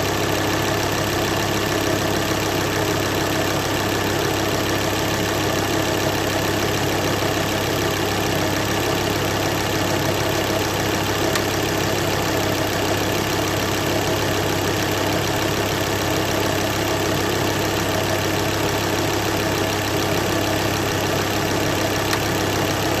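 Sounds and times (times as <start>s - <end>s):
car engine idling: 0.0s - 23.0s
engine clicking noise: 21.6s - 22.9s.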